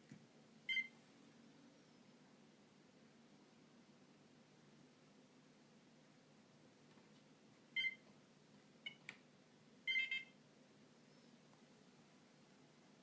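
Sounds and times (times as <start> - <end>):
mobile phone beeping: 0.7 - 0.9, 7.8 - 8.0, 9.9 - 10.4.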